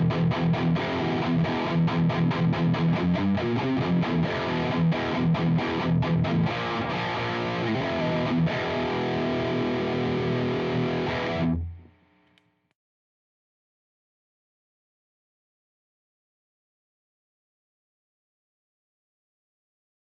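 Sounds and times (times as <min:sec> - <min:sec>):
distorted electric guitar riff: 0:00.0 - 0:12.2.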